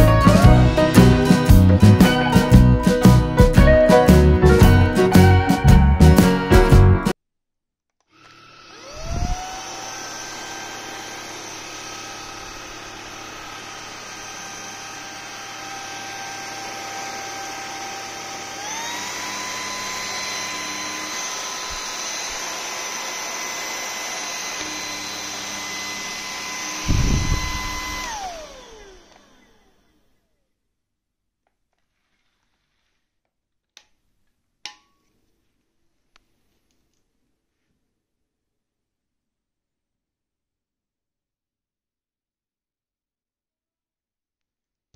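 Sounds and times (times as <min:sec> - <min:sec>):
small electric motor whining: 0:08.0 - 0:30.4
low thump: 0:26.8 - 0:27.9.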